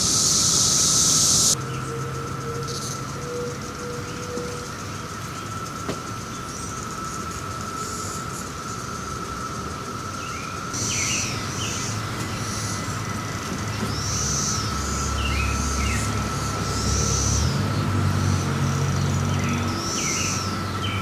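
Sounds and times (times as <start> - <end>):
cicadas droning: 0.0 - 21.0
low vehicle rumble: 10.8 - 21.0.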